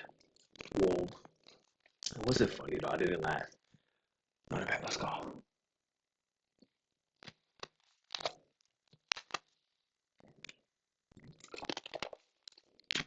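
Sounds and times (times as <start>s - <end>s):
crunching and crackling: 7.2s - 9.6s, 10.2s - 13.0s.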